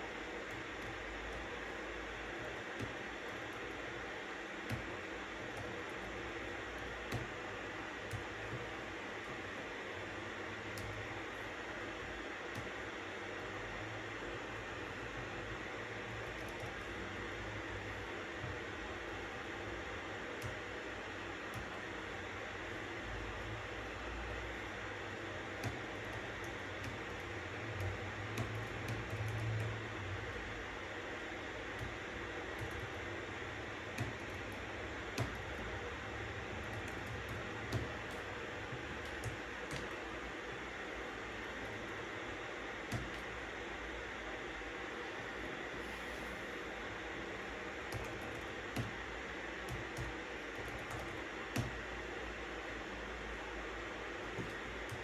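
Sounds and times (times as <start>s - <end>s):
white-noise hiss: 0.0s - 55.0s
keyboard typing clicks: 0.4s - 3.9s, 4.6s - 9.7s, 10.6s - 11.7s, 12.4s - 13.5s, 16.0s - 19.5s, 20.2s - 20.8s, 21.4s - 22.0s, 23.3s - 30.5s, 31.6s - 40.4s, 42.8s - 43.4s, 47.8s - 49.0s, 49.6s - 51.9s, 54.3s - 55.0s.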